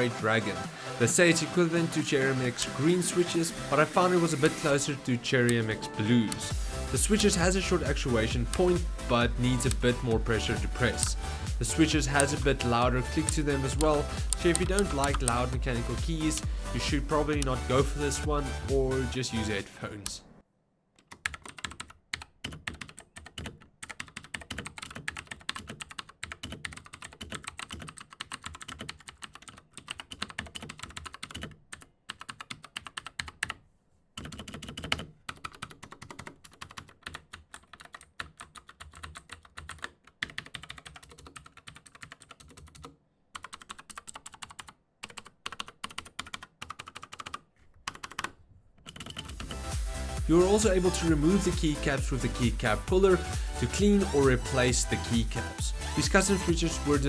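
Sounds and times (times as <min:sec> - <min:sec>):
clicky mechanical keyboard typing: 0:04.0 - 0:18.2, 0:21.0 - 0:33.6, 0:34.2 - 0:49.6.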